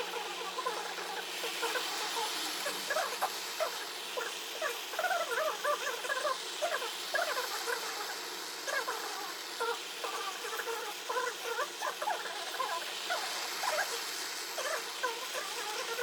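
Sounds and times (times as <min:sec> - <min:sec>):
animal squeaks and chirps: 0:08.7 - 0:14.0.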